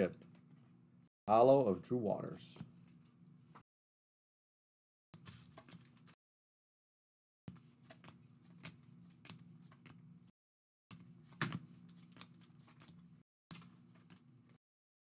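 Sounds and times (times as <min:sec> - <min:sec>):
trading cards rustling: 0:11.2 - 0:14.3.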